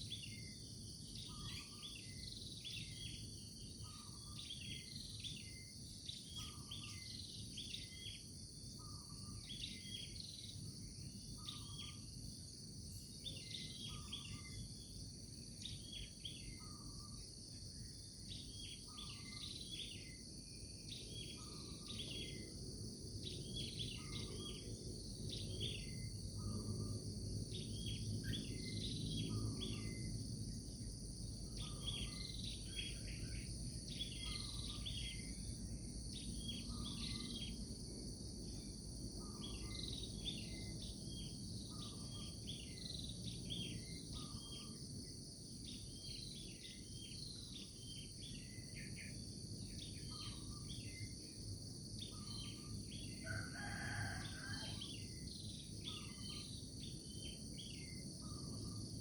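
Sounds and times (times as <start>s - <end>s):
insects trilling: 0.0s - 59.0s
long loud bird call: 53.2s - 54.8s.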